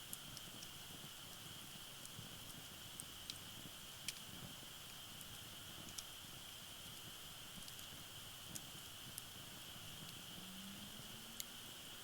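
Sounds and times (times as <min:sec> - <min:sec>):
fire popping: 0:00.0 - 0:12.0
wood fire crackling: 0:00.0 - 0:12.0
steady high-pitched tone: 0:09.8 - 0:12.0.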